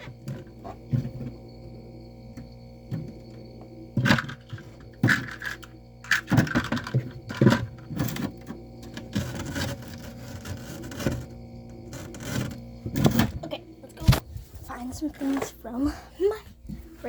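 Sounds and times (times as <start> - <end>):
containers knocking and clicking: 2.3 - 14.2.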